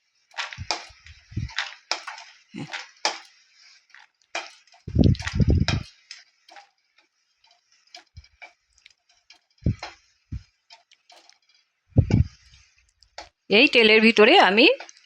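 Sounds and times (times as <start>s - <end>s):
spoon knocking and scraping a pan: 0.4s - 3.4s, 4.0s - 6.7s, 7.4s - 11.6s.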